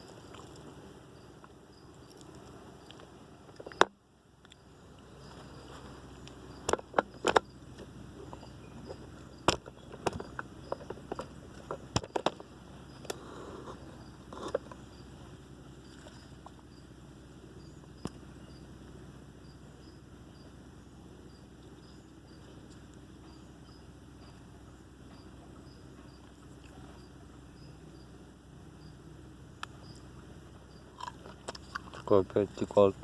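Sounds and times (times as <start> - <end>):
low background hum: 0.0 - 33.0
handling clicks and knocks: 6.2 - 13.2.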